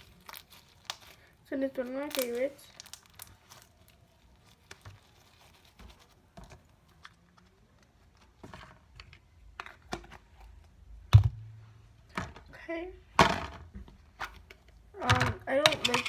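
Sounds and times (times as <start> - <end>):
crunchy slime clicking and crackling: 0.0 - 7.9.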